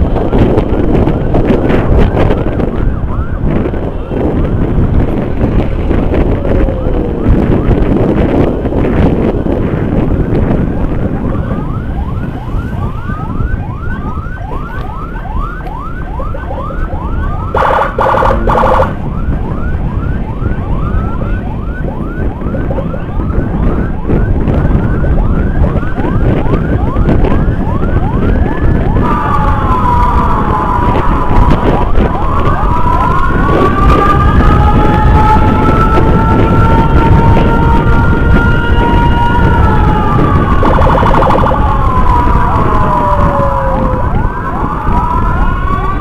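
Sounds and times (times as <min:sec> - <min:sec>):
motorcycle electronic siren: 0:00.0 - 0:46.0
steady road noise: 0:00.0 - 0:46.0
pulsed horn blast: 0:17.5 - 0:19.0.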